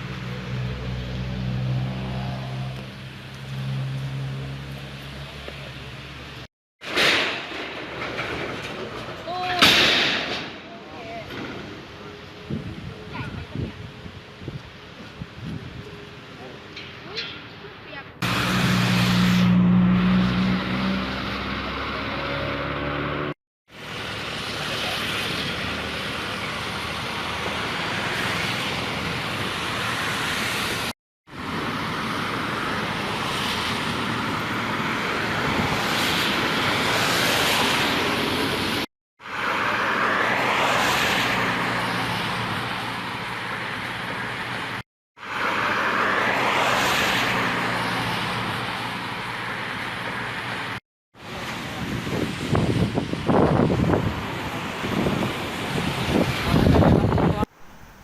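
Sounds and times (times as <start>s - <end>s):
storm wind: 11.3s - 16.0s, 51.4s - 58.0s
rain: 23.7s - 56.7s.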